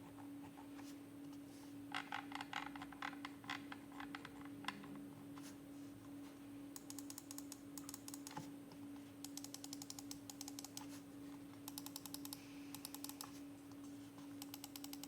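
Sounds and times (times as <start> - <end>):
steady low hum: 0.0 - 15.0
mouse buttons clicking rapidly: 6.8 - 8.4, 9.2 - 10.9, 11.7 - 13.4, 14.4 - 15.0.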